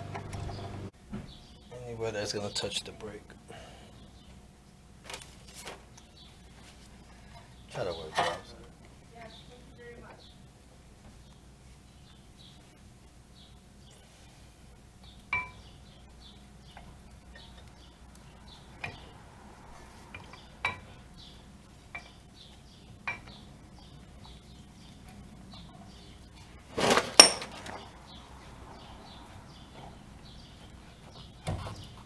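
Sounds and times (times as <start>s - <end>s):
metal tools clinking: 26.8s - 27.8s.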